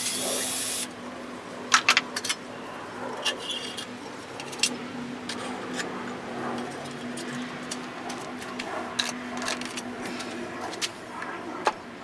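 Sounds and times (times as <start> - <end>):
hand tools clicking and clinking: 1.7 - 2.5, 3.2 - 5.9, 6.5 - 11.0.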